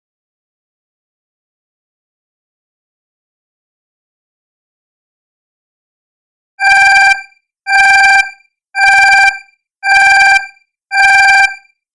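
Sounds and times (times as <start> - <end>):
timer alarm beeping: 6.6 - 11.6.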